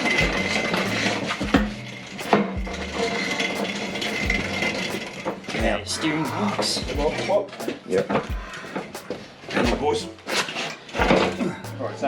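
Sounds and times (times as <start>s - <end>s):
steady hum: 0.0s - 7.3s.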